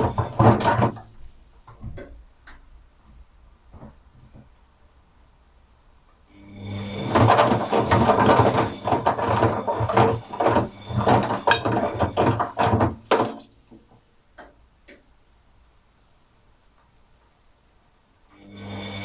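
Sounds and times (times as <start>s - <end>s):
washing machine drum sloshing: 0.0s - 2.1s, 6.6s - 14.0s.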